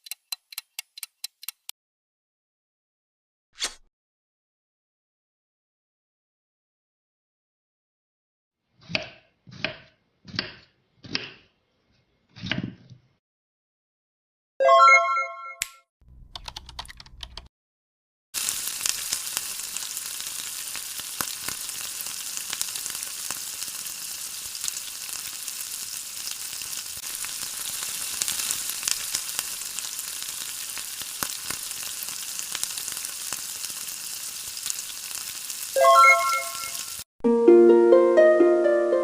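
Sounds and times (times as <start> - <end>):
flatbread sizzling in oil: 18.4 - 37.1
plucked music notes: 37.2 - 39.0.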